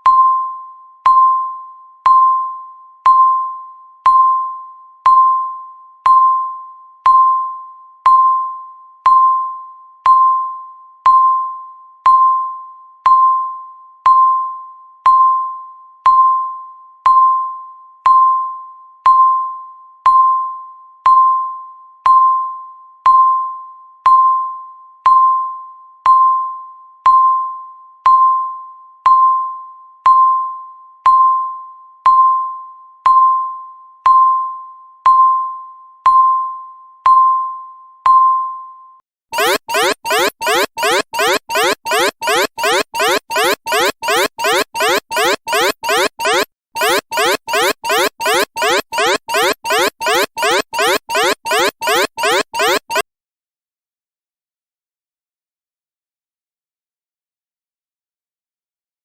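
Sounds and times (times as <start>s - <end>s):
timer chime dings: 39.4s - 53.0s.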